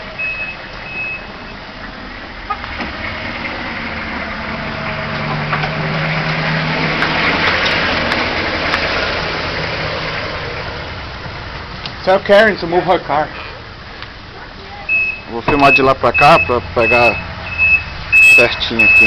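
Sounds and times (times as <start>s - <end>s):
reversing beeps: 0.2s - 1.3s, 14.9s - 19.0s.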